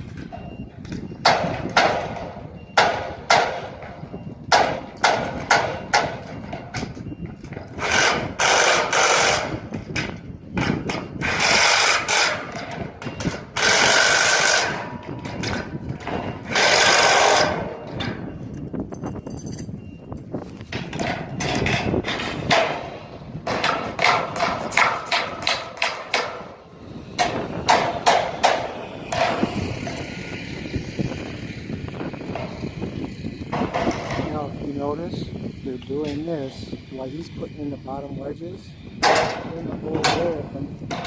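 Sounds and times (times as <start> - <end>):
hammer striking metal wedges: 1.2 - 6.6, 27.2 - 30.0.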